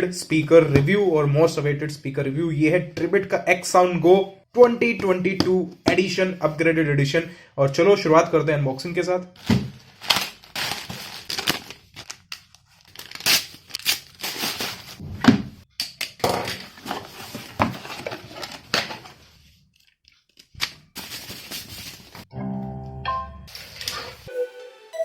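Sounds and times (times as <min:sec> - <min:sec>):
packaging tearing and crinkling: 0:09.4 - 0:15.0
music: 0:22.3 - 0:25.0.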